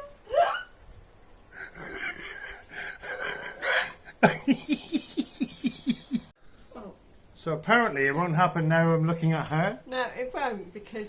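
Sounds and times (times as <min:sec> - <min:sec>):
person giggling and laughing: 0:01.6 - 0:06.3.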